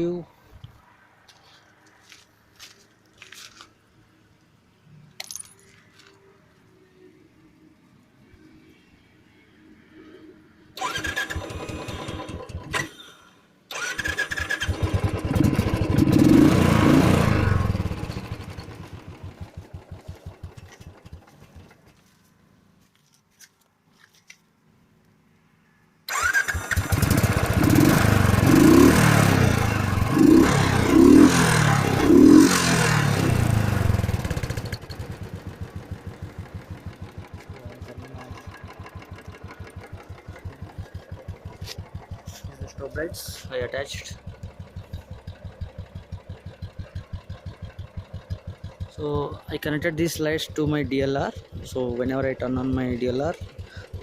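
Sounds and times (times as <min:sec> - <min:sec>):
motorcycle engine revving and idling: 0:11.2 - 0:12.9, 0:13.8 - 0:22.2, 0:26.1 - 0:54.0.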